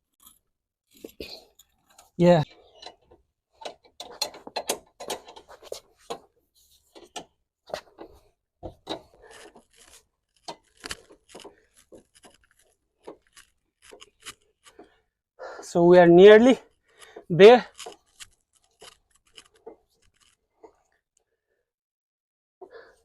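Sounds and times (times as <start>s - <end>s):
car jack clicking and scraping: 1.6s - 6.3s, 6.9s - 14.9s, 16.9s - 20.4s.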